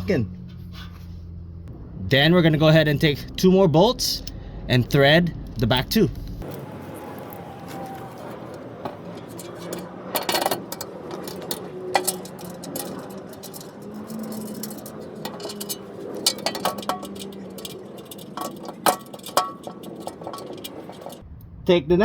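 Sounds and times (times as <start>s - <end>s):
metal bolts clinking: 7.6s - 21.2s.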